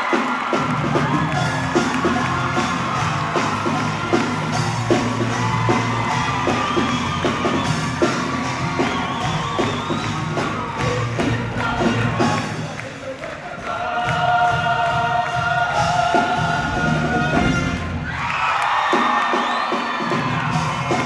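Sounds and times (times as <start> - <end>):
audience whooping: 0.0 - 12.9, 14.4 - 21.0
backing music with steady beat: 0.0 - 13.0
choir singing: 7.6 - 17.9.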